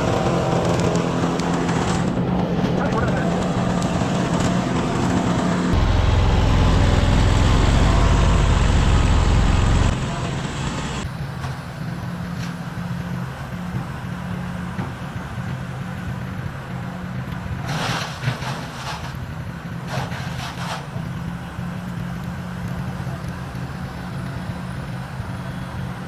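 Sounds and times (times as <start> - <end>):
engine running steadily: 0.0 - 26.0.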